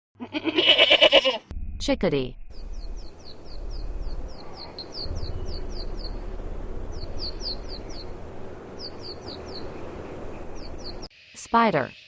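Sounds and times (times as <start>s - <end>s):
low background rumble: 1.5s - 11.1s
chickadee calling: 2.5s - 12.0s.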